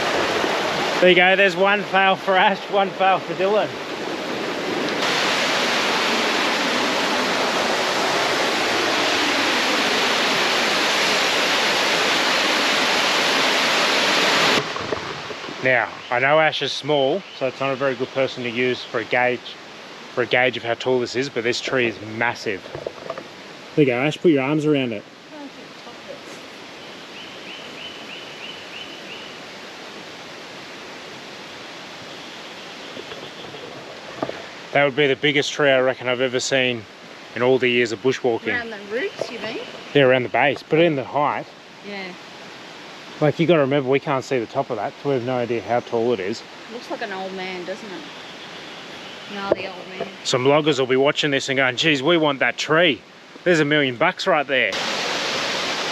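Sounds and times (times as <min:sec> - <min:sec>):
waterfall rushing: 0:00.0 - 0:26.8, 0:27.5 - 0:55.9.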